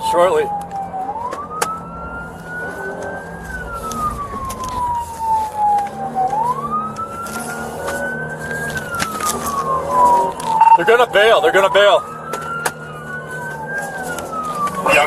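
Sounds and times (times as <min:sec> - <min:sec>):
police siren wailing: 0:00.0 - 0:15.0
vehicle road noise: 0:00.0 - 0:15.0.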